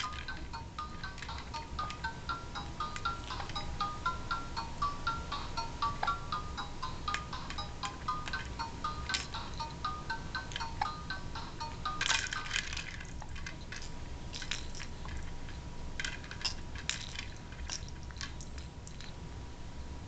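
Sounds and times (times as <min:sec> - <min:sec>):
faint steady high tone: 0:00.0 - 0:12.7
baby toy clicking and rattling: 0:00.0 - 0:19.2.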